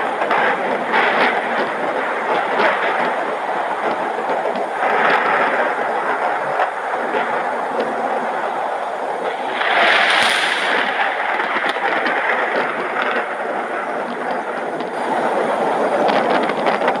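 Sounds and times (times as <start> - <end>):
heavy rain hiss: 0.0 - 16.5
sharp raindrop clicks: 8.8 - 17.0.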